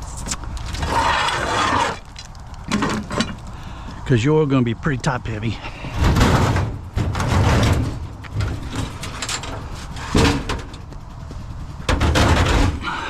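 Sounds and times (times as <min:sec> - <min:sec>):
metal file cabinet clunking: 0:05.8 - 0:10.9, 0:11.8 - 0:13.0.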